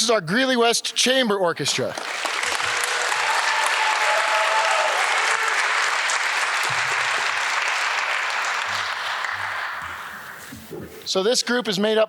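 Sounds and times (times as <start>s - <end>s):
audience applauding: 1.8s - 10.7s.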